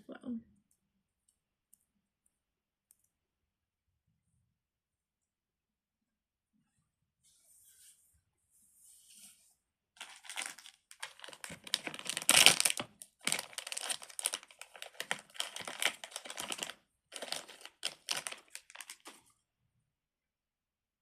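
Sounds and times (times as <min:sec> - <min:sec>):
crinkly plastic packaging crackling: 0:10.0 - 0:19.3.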